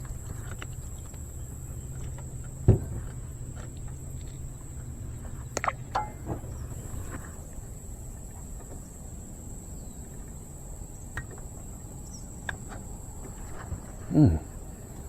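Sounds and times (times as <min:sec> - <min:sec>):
low hum: 0:00.0 - 0:07.8
insect drone: 0:00.0 - 0:15.0.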